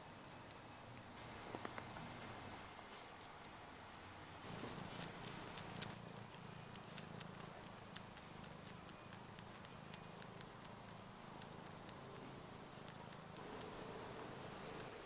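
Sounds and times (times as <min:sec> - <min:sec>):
cat purring: 0:04.0 - 0:15.0
light ticking clicks: 0:04.7 - 0:15.0.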